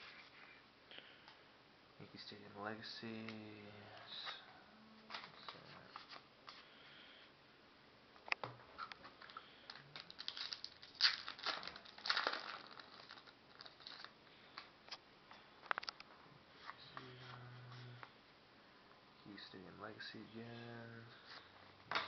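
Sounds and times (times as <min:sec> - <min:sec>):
card pack wrapper crinkling: 0:09.2 - 0:14.7.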